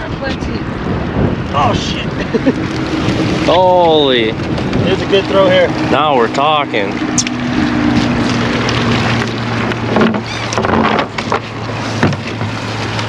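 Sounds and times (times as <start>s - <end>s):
wind noise on microphone: 0.0s - 6.3s
boat motor humming: 0.0s - 13.0s.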